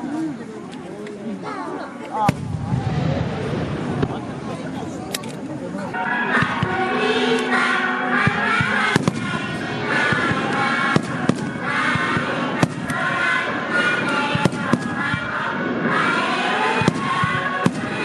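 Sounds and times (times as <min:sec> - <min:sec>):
fireworks bangs: 0:02.2 - 0:07.4, 0:08.2 - 0:18.0
music playing: 0:05.9 - 0:18.0.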